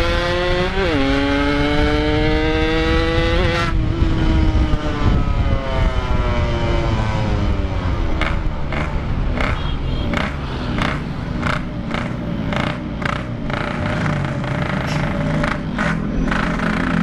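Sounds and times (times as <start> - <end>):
two-stroke motorcycle engine: 8.2 - 17.0.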